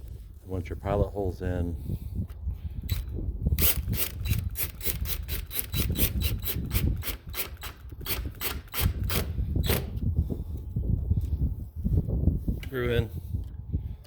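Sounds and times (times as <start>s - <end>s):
screwdriver rasping screw: 2.9s - 10.0s.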